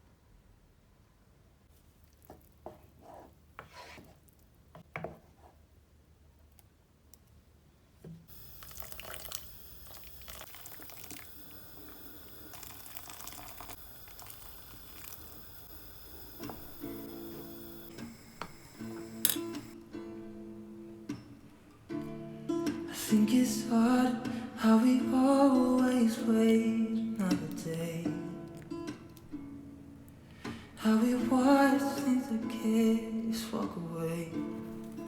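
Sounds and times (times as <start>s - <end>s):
water running into sink: 8.3s - 19.8s.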